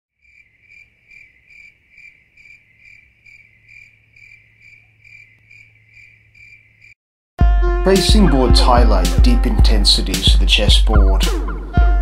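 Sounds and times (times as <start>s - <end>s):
cricket chirping: 0.2s - 7.0s.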